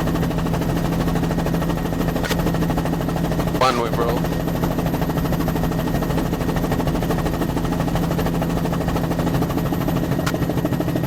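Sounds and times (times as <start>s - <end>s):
helicopter in flight: 0.0s - 11.0s.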